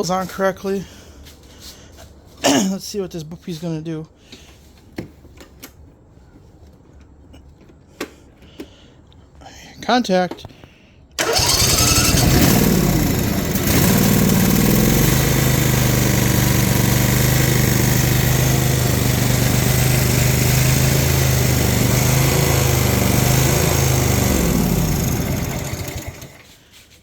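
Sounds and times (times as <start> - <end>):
lawn mower engine running: 11.2 - 26.6.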